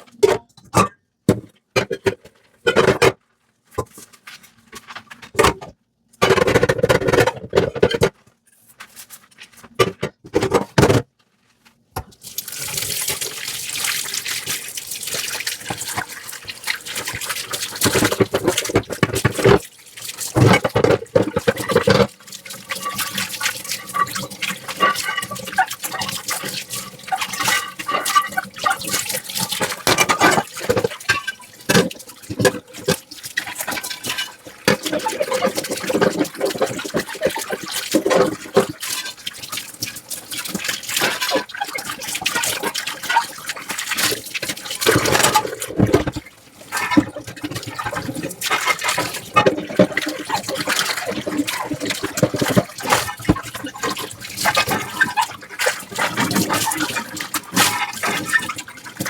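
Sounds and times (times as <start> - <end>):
water running and splashing: 12.2 - 59.0
dishes and utensils clinking: 22.7 - 28.9, 29.6 - 33.0, 44.8 - 46.2.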